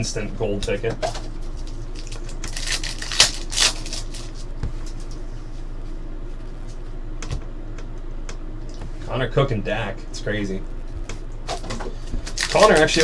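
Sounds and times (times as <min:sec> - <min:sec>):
steady low hum: 0:00.0 - 0:13.0
cards rustling: 0:01.6 - 0:04.5, 0:12.2 - 0:13.0.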